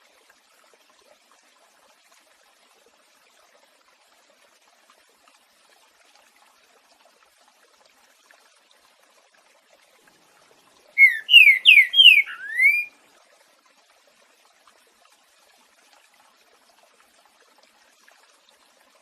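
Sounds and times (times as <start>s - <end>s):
faint trickle of water: 0.0s - 19.0s
bird whistling song: 11.0s - 12.9s.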